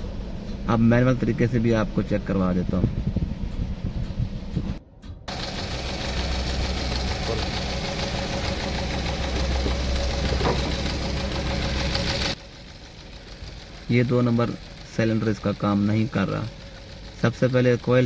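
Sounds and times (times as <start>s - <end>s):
car engine idling with misfire: 5.3s - 18.0s.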